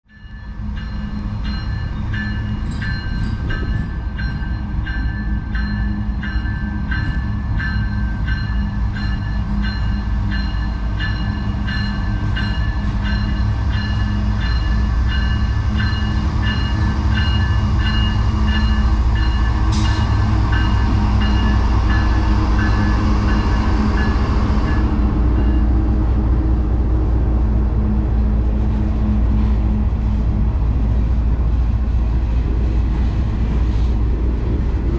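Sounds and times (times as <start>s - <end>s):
diesel locomotives rumbling: 0.0s - 34.9s
train bell ringing: 0.1s - 26.0s.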